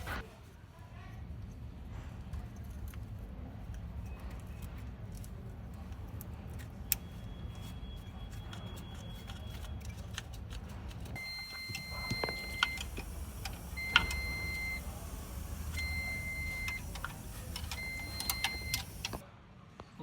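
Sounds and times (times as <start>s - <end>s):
electronic beeps: 11.2s - 19.2s
low steady rumble: 11.2s - 19.2s.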